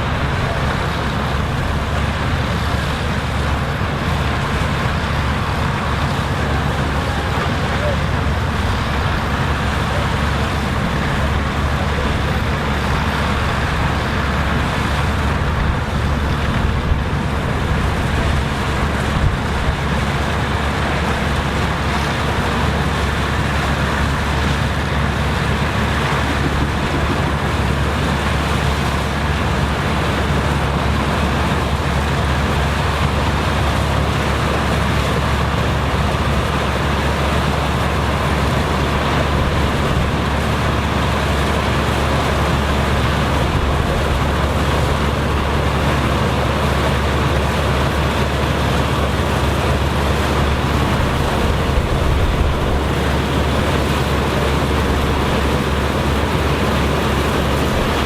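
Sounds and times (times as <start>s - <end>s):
machinery engine droning: 0.0s - 58.0s.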